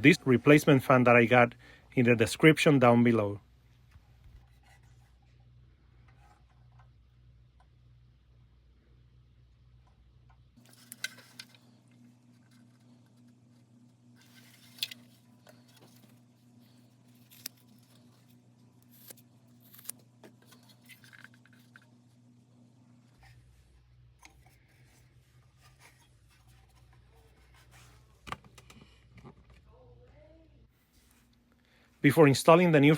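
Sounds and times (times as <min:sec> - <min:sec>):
low steady hum: 0:00.0 - 0:32.9
parts handled by hand: 0:09.8 - 0:22.4, 0:23.0 - 0:29.7.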